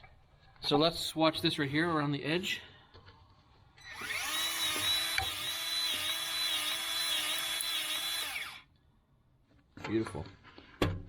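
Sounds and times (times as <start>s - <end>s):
grease gun motor pumping: 3.8s - 8.6s.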